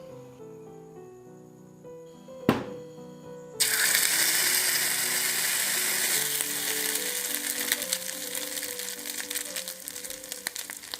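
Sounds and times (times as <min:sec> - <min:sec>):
soft background music: 0:00.0 - 0:10.9
egg sizzling in hot oil: 0:03.6 - 0:10.9.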